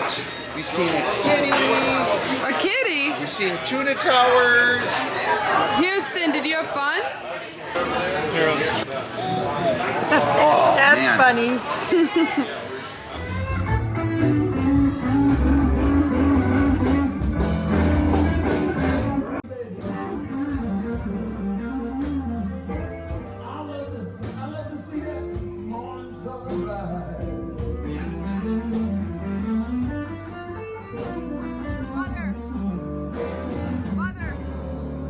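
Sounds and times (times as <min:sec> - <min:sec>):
blues-rock guitar music: 0:13.1 - 0:35.0.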